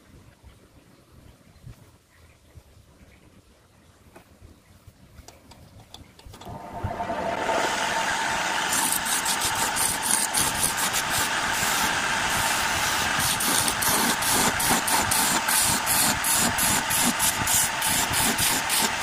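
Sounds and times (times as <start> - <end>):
lathe motor whining: 6.4 - 19.0.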